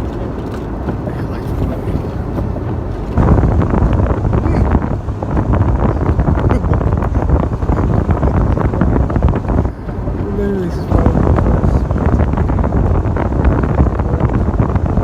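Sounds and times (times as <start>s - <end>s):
wind and road noise rumble: 0.0s - 15.0s.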